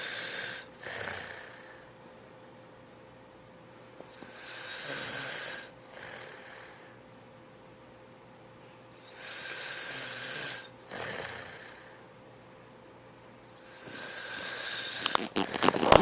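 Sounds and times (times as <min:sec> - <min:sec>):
person snoring: 0:00.0 - 0:01.8, 0:04.2 - 0:07.0, 0:09.0 - 0:12.0, 0:13.6 - 0:16.0.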